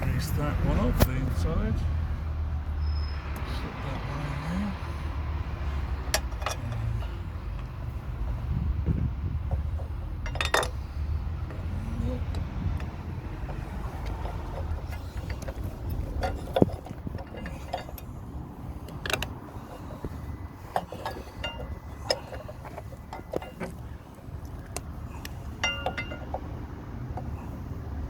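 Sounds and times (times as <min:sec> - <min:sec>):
low steady rumble: 0:03.8 - 0:28.0
metallic clicks and clinks: 0:09.5 - 0:18.1, 0:18.9 - 0:26.5.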